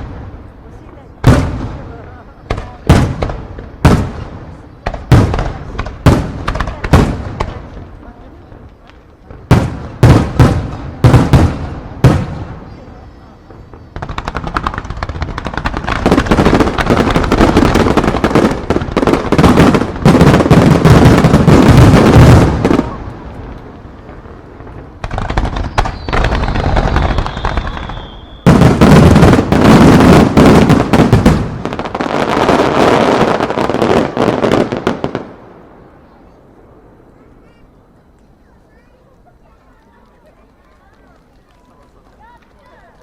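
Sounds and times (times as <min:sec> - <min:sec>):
fireworks bursts and crackle: 0:00.0 - 0:43.0
falling firework whistle: 0:25.5 - 0:28.8.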